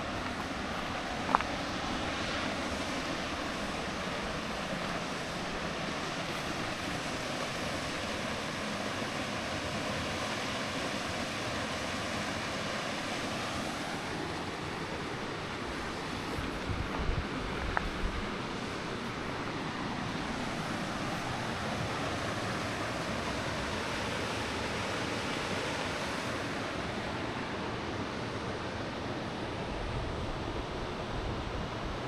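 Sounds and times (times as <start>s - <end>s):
falling water rushing: 0.0s - 27.8s.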